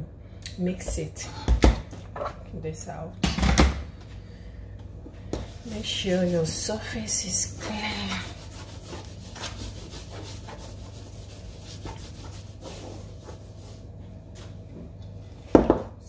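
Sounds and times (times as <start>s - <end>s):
gritty scraping in a bowl: 5.6s - 13.6s.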